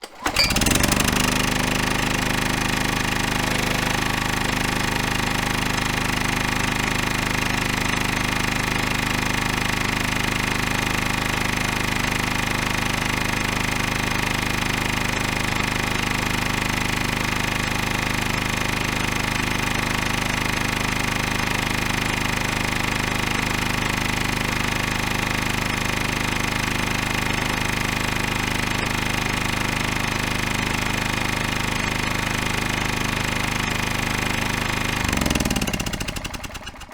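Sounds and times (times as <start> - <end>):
generator engine chugging: 0.1 - 36.9.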